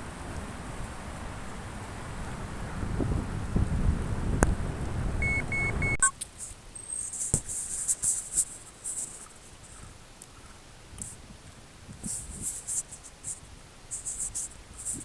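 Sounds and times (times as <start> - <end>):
wind buffeting microphone: 0.0 - 6.0, 10.9 - 12.8
short electronic beeps: 5.2 - 6.2.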